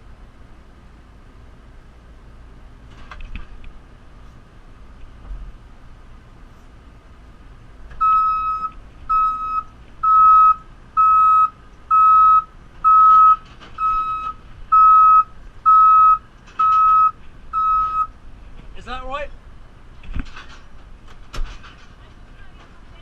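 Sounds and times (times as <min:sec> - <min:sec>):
low engine rumble: 0:00.0 - 0:23.0
reversing alarm beeping: 0:08.0 - 0:18.2.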